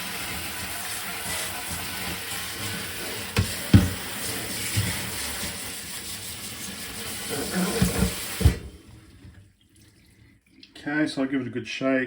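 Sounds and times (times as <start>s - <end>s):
tap water running in sink: 0.0s - 10.8s
board knocking: 3.4s - 4.1s.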